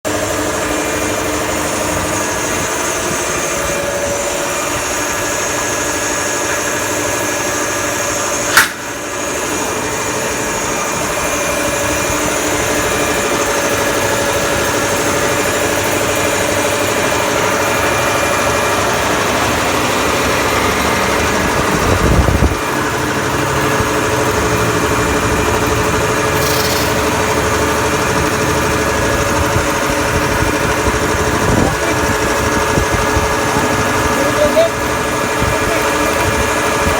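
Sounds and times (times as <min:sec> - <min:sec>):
air compressor running: 0:00.1 - 0:36.9
sharp click: 0:08.5 - 0:09.0, 0:26.4 - 0:27.2.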